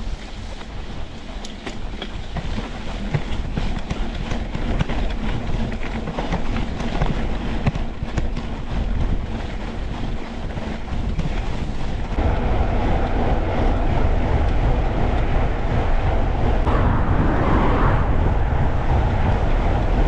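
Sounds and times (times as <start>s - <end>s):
bike rattling over stones: 0.0s - 12.2s
wind rumble on microphone: 0.0s - 20.0s.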